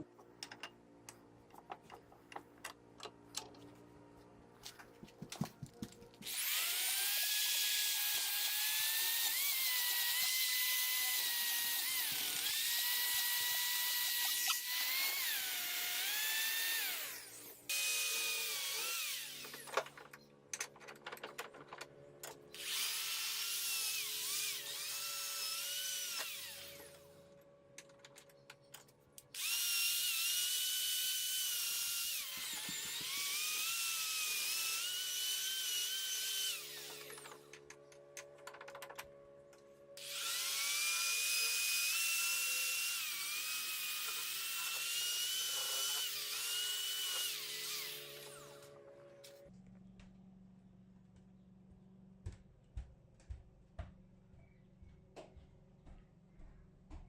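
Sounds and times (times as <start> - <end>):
power tool motor whining: 6.2 - 19.7, 22.6 - 27.2, 29.4 - 37.5, 40.0 - 49.4.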